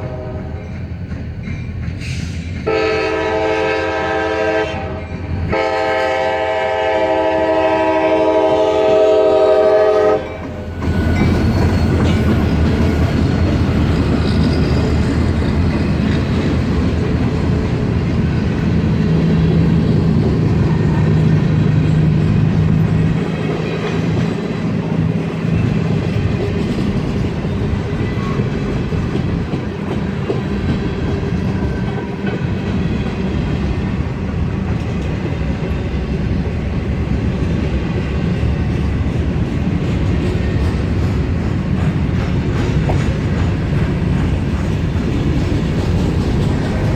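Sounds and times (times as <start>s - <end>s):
locomotive horn: 0.0s - 0.7s, 2.6s - 11.3s
freight train rumbling: 0.0s - 46.9s
train wheels clattering: 0.0s - 46.9s.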